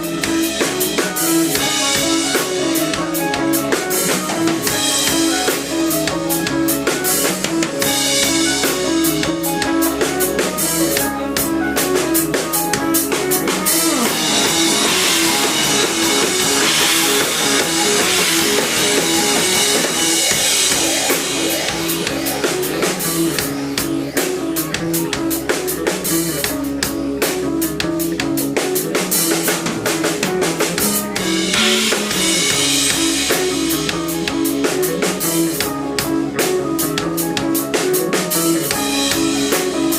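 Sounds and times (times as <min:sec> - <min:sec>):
drum kit pounding: 0:00.0 - 0:39.9
rock band playing live: 0:00.0 - 0:39.9.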